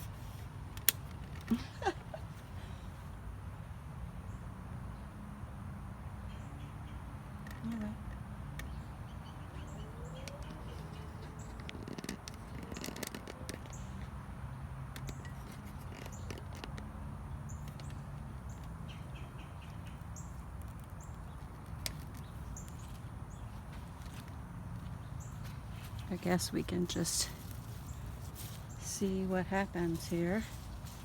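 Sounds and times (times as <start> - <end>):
sharp clicks and rustles: 0.0 - 2.4, 9.5 - 14.2, 14.9 - 18.8, 19.7 - 31.0
birds chirping: 6.3 - 14.3, 14.9 - 31.0.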